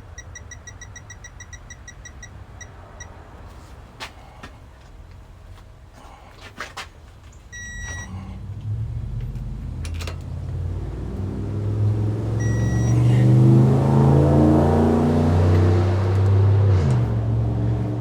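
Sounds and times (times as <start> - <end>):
short high beeps: 0.1 - 3.1, 7.6 - 8.1, 12.4 - 13.2
engine running: 7.6 - 18.0.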